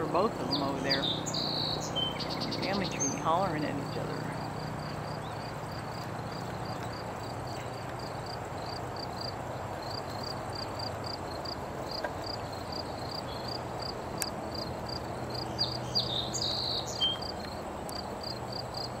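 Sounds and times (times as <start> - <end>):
soft background hiss: 0.0 - 19.0
insects chirping: 0.1 - 19.0
high bird calls: 0.4 - 7.9.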